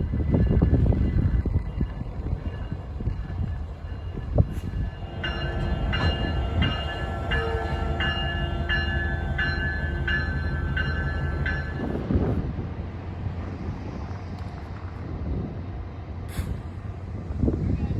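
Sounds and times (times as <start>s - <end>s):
low locomotive rumble: 0.0s - 17.9s
locomotive bell ringing: 0.3s - 12.2s.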